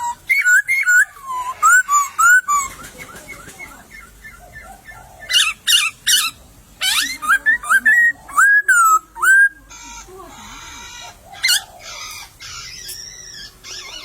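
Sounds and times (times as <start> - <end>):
bird singing whistled notes: 0.0 - 9.6.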